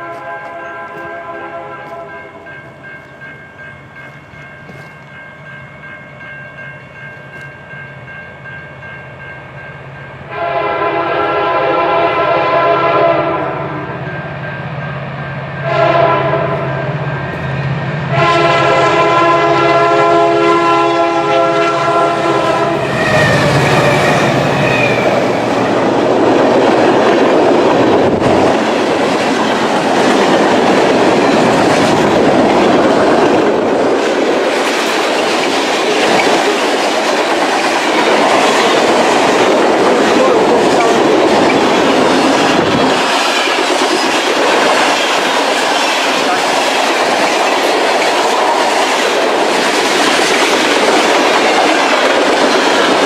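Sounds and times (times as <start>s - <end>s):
locomotive horn: 0.0s - 2.3s, 10.3s - 14.0s, 15.6s - 17.0s, 18.1s - 25.9s
train wheels clattering on rails: 0.0s - 8.2s, 21.9s - 53.0s
freight train rushing past: 0.0s - 53.0s.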